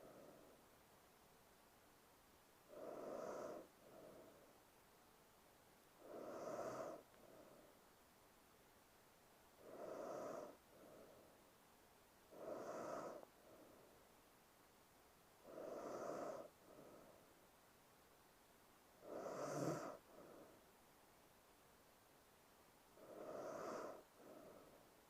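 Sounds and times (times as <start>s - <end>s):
woman snoring softly: 0.0s - 0.6s, 2.7s - 4.5s, 6.0s - 7.8s, 9.6s - 11.4s, 12.3s - 14.0s, 15.4s - 17.2s, 19.0s - 20.6s, 23.0s - 24.8s.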